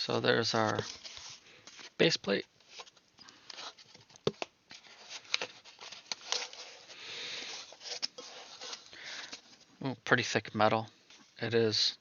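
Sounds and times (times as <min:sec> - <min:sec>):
packaging rustling: 0:00.4 - 0:09.7.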